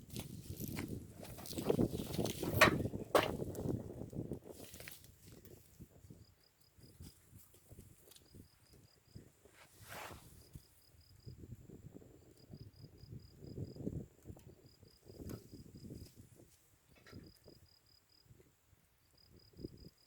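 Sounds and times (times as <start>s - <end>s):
insect chirping: 5.8s - 9.4s, 10.4s - 16.2s, 17.0s - 20.0s.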